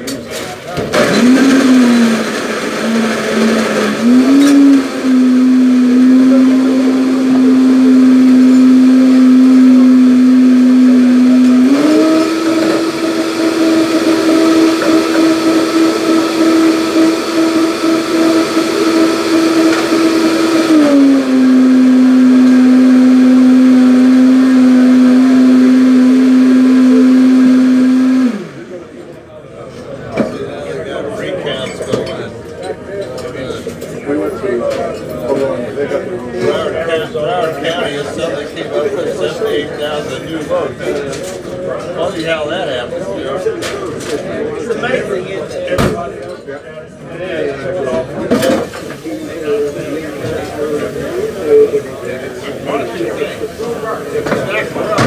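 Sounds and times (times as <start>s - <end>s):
blender motor running: 1.0s - 29.0s.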